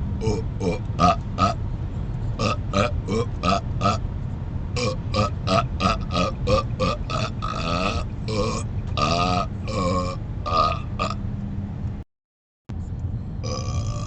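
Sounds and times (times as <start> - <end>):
car rumble: 0.0 - 12.0, 12.7 - 14.0
man burping: 0.2 - 1.6, 2.4 - 4.0, 4.8 - 11.2, 13.4 - 14.0.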